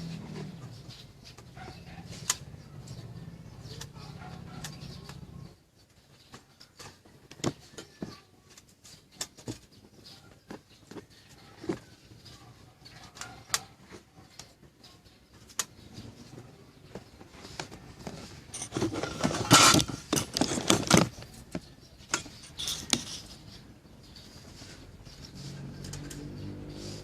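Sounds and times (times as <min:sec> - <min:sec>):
objects clattering: 0:16.2 - 0:23.7
small hard objects clicking: 0:18.6 - 0:23.5.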